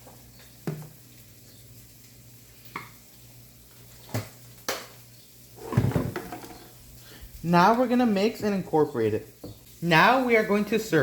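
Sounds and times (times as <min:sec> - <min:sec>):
knocks of handling containers: 0:05.6 - 0:06.7.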